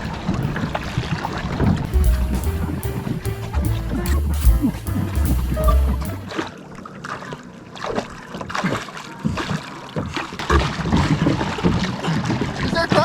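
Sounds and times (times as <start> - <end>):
water splashing around pedal boat: 6.3 - 13.0.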